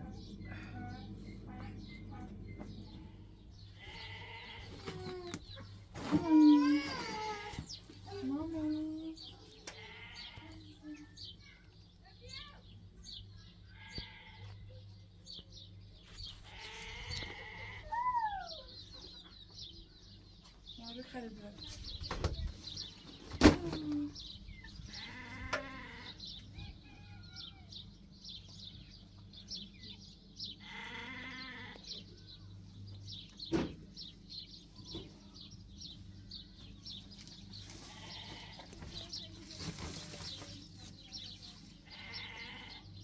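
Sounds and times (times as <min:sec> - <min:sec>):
sheep or goats bleating: 0:03.8 - 0:05.4, 0:09.7 - 0:10.6, 0:13.7 - 0:14.6, 0:16.5 - 0:18.2, 0:24.9 - 0:26.3, 0:30.6 - 0:32.0, 0:37.6 - 0:38.8, 0:41.8 - 0:43.0.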